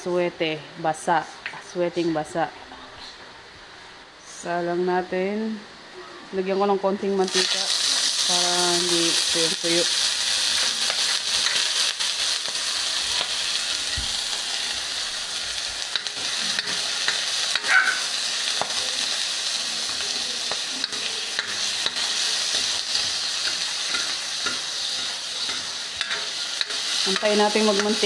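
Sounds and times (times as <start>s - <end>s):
chicken fat sizzling in a pan: 7.2s - 28.0s.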